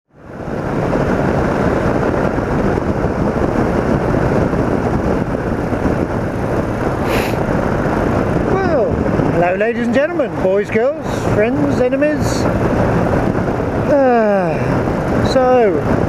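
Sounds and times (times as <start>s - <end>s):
wind and road noise: 0.1s - 16.0s.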